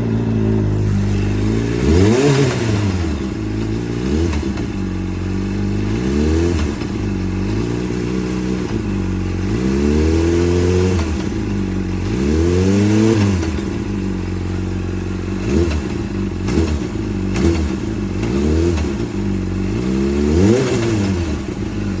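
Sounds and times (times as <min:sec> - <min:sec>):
engine knocks: 0:00.0 - 0:09.2, 0:15.4 - 0:19.4
motorcycle engine revving: 0:00.0 - 0:22.0.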